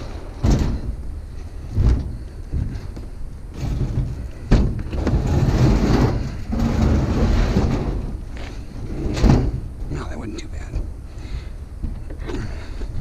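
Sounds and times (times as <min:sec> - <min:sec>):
washing machine scraping and rumbling: 0:00.0 - 0:09.9.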